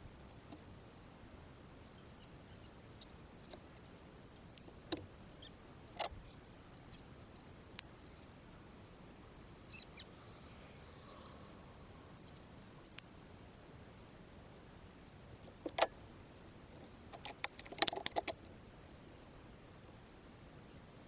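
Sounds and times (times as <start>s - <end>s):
hand tools clicking and tapping: 17.1s - 18.4s.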